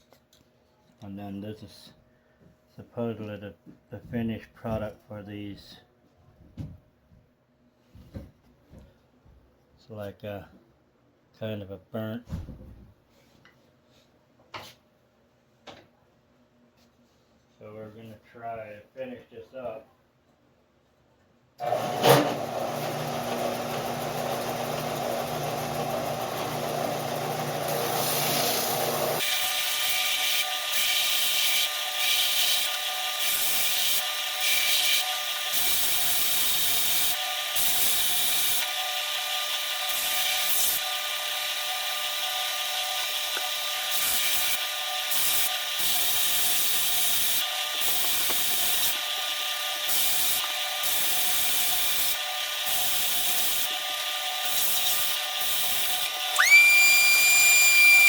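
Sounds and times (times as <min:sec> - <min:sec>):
power sander motor hum: 0:21.6 - 0:29.3, 0:56.4 - 0:58.0.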